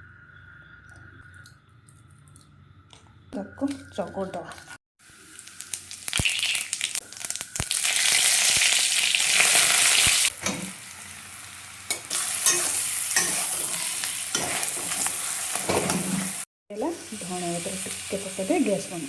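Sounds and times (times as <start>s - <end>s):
filling sizzling in a pan: 4.6s - 19.0s.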